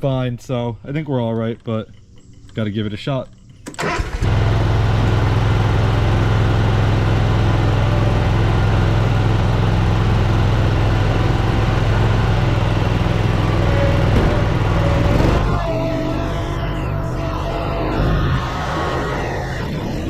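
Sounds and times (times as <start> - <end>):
mower engine running: 3.7 - 17.6.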